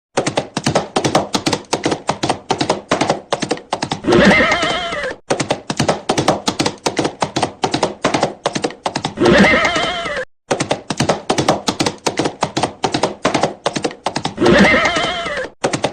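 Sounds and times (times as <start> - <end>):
horse hoofbeats galloping: 0.2 - 15.9
horse whinnying: 4.0 - 5.2, 9.2 - 10.2, 14.3 - 15.6.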